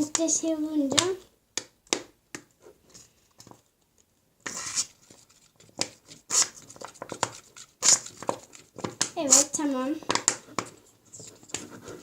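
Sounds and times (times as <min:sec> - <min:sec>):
scattered clicks and taps: 0:10.0 - 0:10.8.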